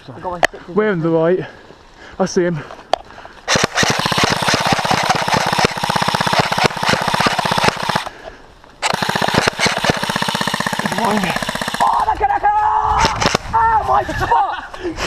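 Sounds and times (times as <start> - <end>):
airsoft rifle full auto bursts: 3.5 - 8.1, 8.8 - 12.1.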